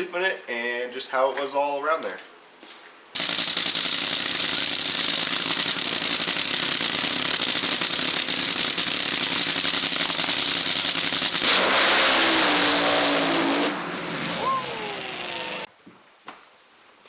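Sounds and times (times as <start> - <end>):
engine running with rattle: 3.2 - 15.7.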